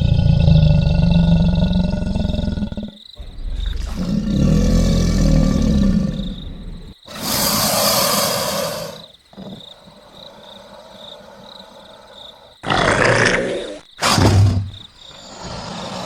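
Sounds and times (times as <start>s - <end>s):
crocodile bellowing: 0.0s - 9.6s, 10.6s - 16.0s.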